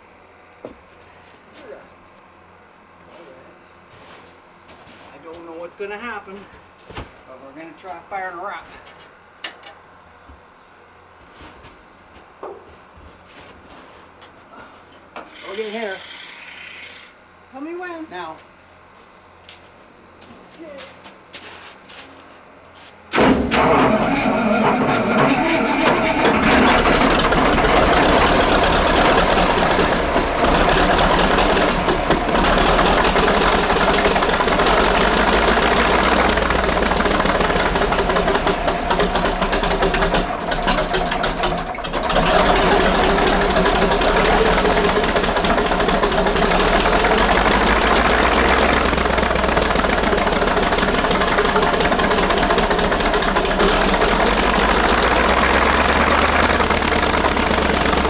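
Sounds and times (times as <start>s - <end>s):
diesel engine running: 23.1s - 58.0s.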